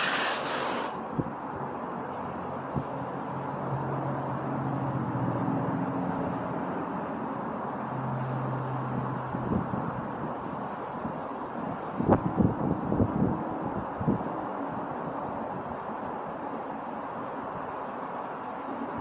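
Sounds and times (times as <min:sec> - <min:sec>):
steady rain hiss: 0:00.0 - 0:01.0.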